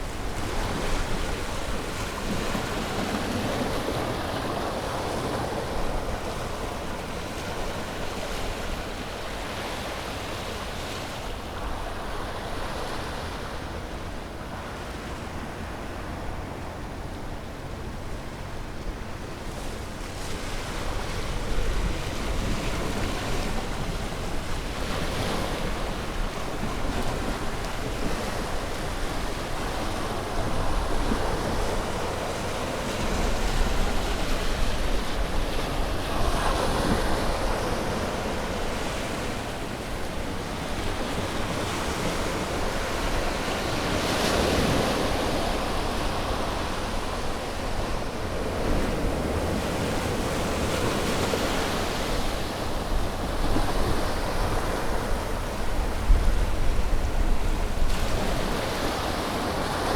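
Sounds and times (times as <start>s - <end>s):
low wind rumble on microphone: 11.4s - 59.9s
sea waves breaking on beach: 19.5s - 59.9s.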